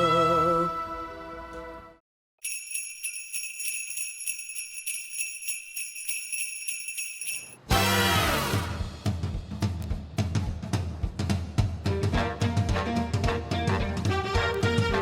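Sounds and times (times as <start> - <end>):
jingle bells shaken: 2.4 - 7.6.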